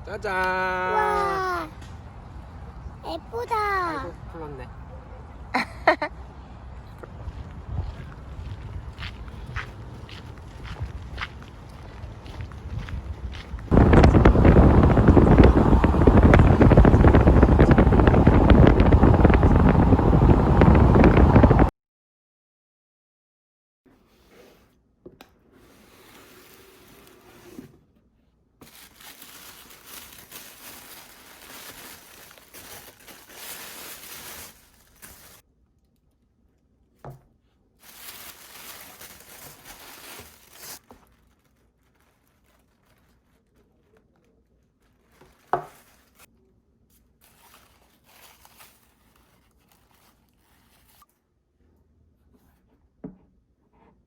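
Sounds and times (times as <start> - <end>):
packaging tearing and crinkling: 28.6 - 35.4, 37.8 - 46.3, 47.2 - 51.1.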